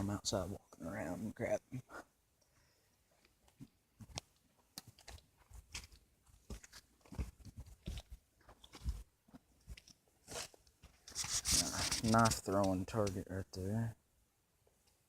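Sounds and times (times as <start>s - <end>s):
footsteps crunching on dry ground: 4.8s - 12.2s.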